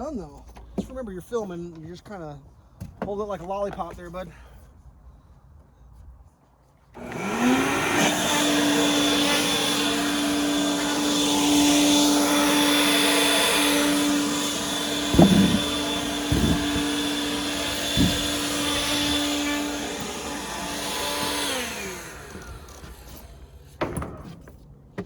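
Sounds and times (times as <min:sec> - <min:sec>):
electric blower whine: 0:07.0 - 0:24.1
short thumps: 0:08.0 - 0:21.5.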